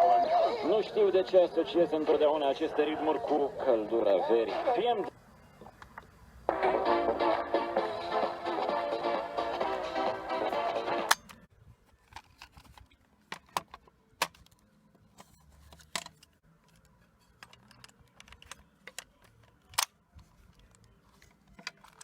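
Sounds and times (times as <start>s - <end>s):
plastic and metal parts clicking: 12.0s - 14.6s, 15.2s - 22.0s.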